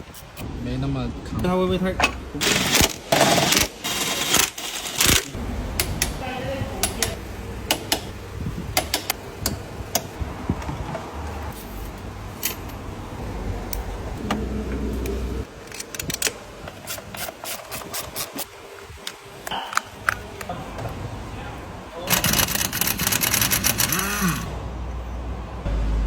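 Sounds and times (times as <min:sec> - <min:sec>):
metal tools clinking: 0:11.5 - 0:12.8.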